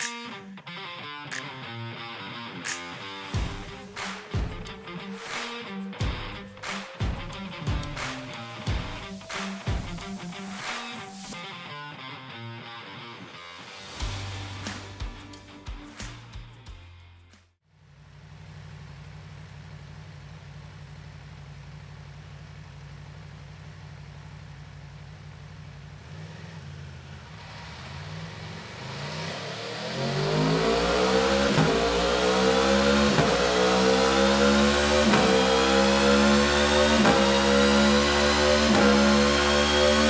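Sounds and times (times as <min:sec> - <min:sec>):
motorcycle engine idling and revving: 0:07.0 - 0:10.2, 0:17.7 - 0:40.0.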